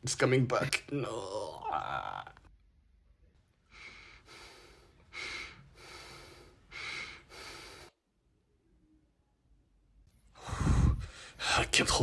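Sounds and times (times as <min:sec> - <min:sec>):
person breathing hard: 0:03.7 - 0:08.0, 0:10.4 - 0:11.6.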